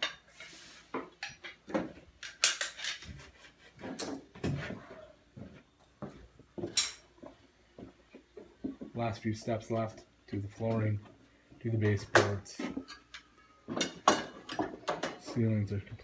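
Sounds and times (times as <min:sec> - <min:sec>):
tiles and tools clattering: 0:00.0 - 0:04.8, 0:11.8 - 0:15.8.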